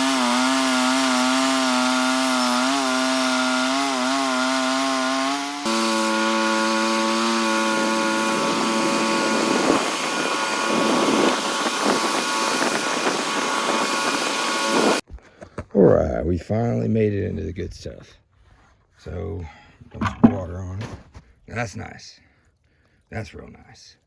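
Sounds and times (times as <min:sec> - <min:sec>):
saw blade rasping through wood: 0:00.0 - 0:15.0.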